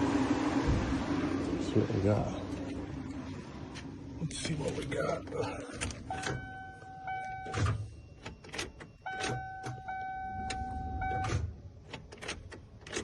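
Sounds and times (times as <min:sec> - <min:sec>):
ignition clicks: 0:05.5 - 0:13.0
dashboard warning buzzer: 0:06.1 - 0:08.0, 0:09.0 - 0:11.5.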